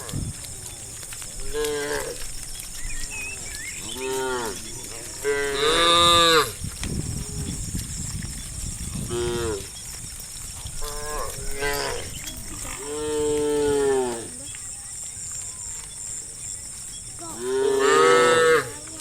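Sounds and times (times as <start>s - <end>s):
cattle mooing: 3.8s - 6.6s, 10.8s - 14.4s, 17.2s - 18.9s.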